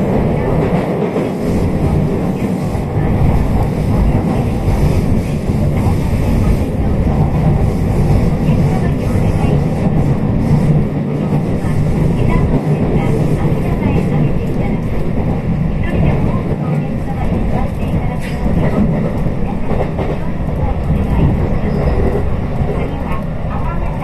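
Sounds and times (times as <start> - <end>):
train running on rails: 0.0 - 24.0.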